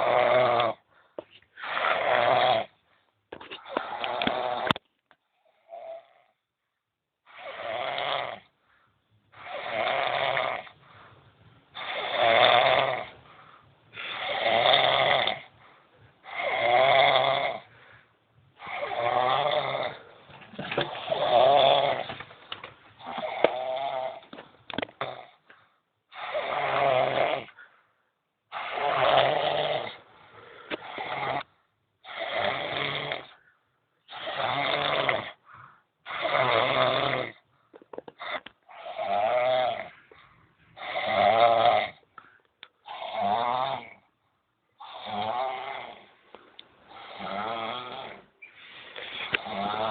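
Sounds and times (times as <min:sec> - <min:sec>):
man snoring: 0:00.0 - 0:00.8, 0:01.6 - 0:02.8, 0:03.6 - 0:04.8, 0:07.3 - 0:08.5, 0:09.4 - 0:10.8, 0:11.8 - 0:13.2, 0:14.0 - 0:15.6, 0:16.2 - 0:17.7, 0:18.6 - 0:22.2, 0:23.0 - 0:24.3, 0:26.1 - 0:27.6, 0:28.5 - 0:33.4, 0:34.1 - 0:35.4, 0:36.1 - 0:37.4, 0:38.2 - 0:40.0, 0:40.8 - 0:42.0, 0:42.8 - 0:44.1, 0:44.8 - 0:46.2, 0:46.9 - 0:48.3, 0:49.1 - 0:49.9.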